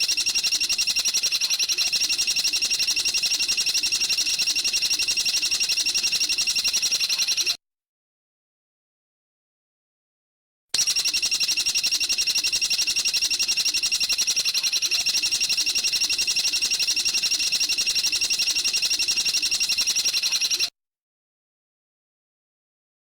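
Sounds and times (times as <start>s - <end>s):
high rapid bird trill: 0.0s - 7.6s, 10.8s - 20.7s.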